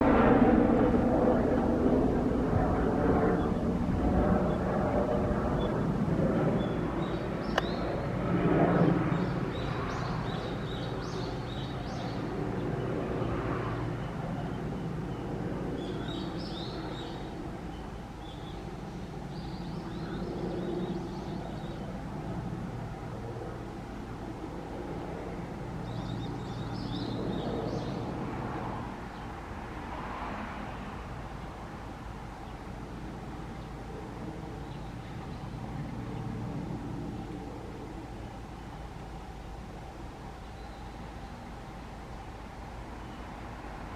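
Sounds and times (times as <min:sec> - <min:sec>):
helicopter flying past: 0:00.0 - 0:40.4
birds chirping: 0:03.3 - 0:08.1, 0:09.0 - 0:22.0.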